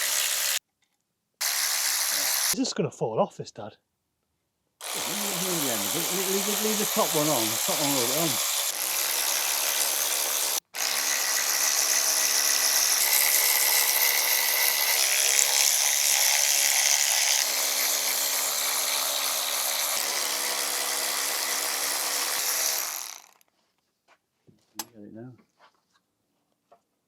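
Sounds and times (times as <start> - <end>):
power tool whirring: 0.0 - 0.6, 1.4 - 2.6, 4.8 - 23.4.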